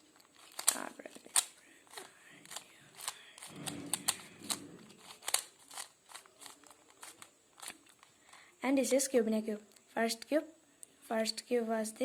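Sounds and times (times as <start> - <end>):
puzzle cube layers clicking: 0.2 - 8.0.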